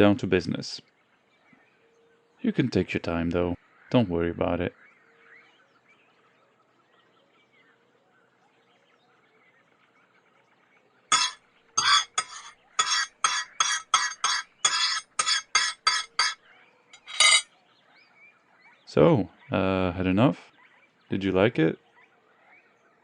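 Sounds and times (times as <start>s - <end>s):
faint background ambience: 0.0s - 23.0s
cutlery clinking on a plate: 11.1s - 16.4s, 17.0s - 17.4s.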